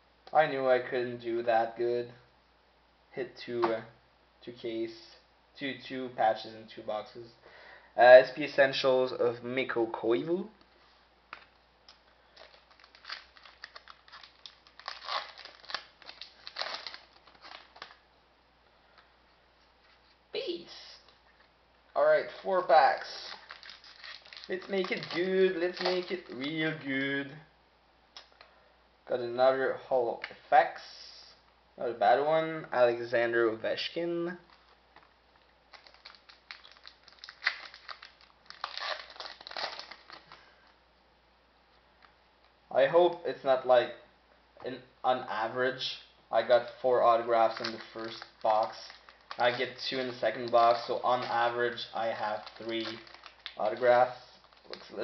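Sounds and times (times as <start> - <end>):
foil wrapper crinkling and tearing: 12.3 - 18.0, 22.9 - 26.6, 35.7 - 40.5, 46.5 - 55.0.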